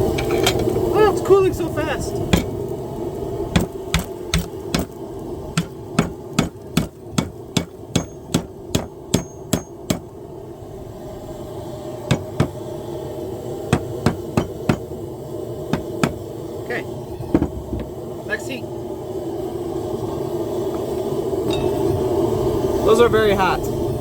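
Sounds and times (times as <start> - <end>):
hammer striking hot steel: 2.2 - 2.7, 3.5 - 10.1, 12.1 - 12.6, 13.7 - 14.9, 15.7 - 16.2, 21.4 - 22.0.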